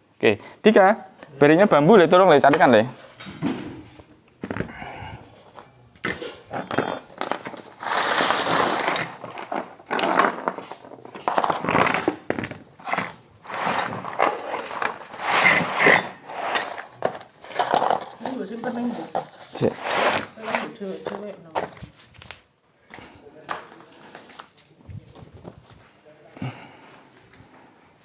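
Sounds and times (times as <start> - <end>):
metallic rings: 5.4 - 10.9, 15.5 - 20.2
small metal parts clinking: 5.5 - 12.2, 13.7 - 20.6.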